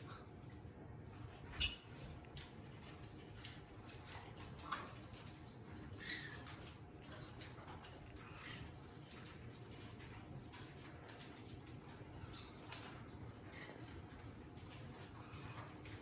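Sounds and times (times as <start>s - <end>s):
parrot shrill call: 1.6s - 2.0s
faint bird chirps: 1.6s - 2.1s.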